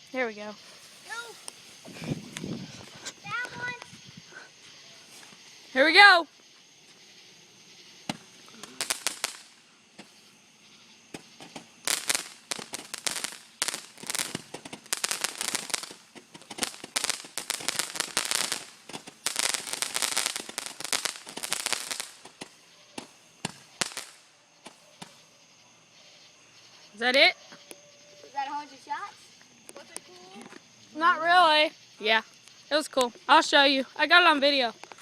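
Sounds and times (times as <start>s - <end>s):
firework crackling bangs: 0.7s - 3.8s, 8.0s - 10.3s, 11.0s - 25.2s.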